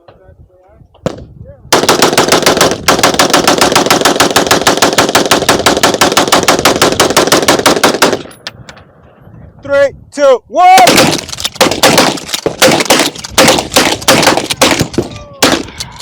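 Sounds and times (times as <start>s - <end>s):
automatic gunfire: 1.7s - 8.3s, 10.9s - 15.7s.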